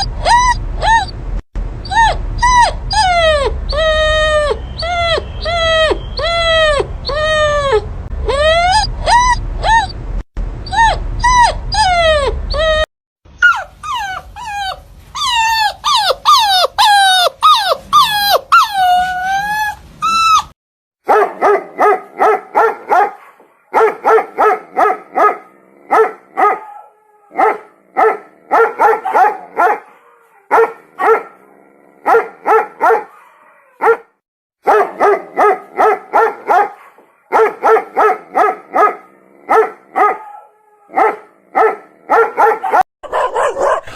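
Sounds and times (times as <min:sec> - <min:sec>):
dog whining and howling: 0:00.0 - 0:01.2, 0:01.8 - 0:10.0, 0:10.6 - 0:20.6, 0:25.1 - 0:27.7, 0:28.6 - 0:31.2, 0:32.5 - 0:34.0, 0:36.2 - 0:43.9
dog barking: 0:21.0 - 0:31.4, 0:32.0 - 0:43.9.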